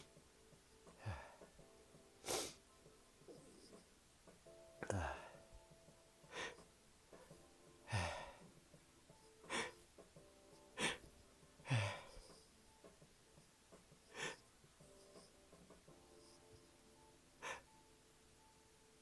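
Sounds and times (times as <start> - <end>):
person gasping and sniffing: 0.9 - 1.5, 2.2 - 2.6, 6.3 - 6.7, 7.9 - 8.5, 9.4 - 9.8, 10.6 - 12.4, 14.1 - 14.5, 17.4 - 17.7.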